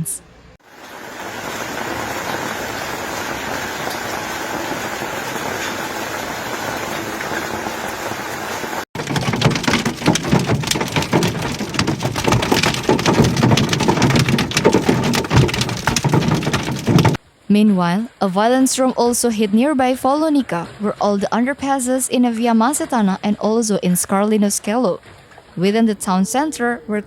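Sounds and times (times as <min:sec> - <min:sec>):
heavy rain hissing: 0:00.6 - 0:17.1
rain drumming on hard surface: 0:00.6 - 0:17.2.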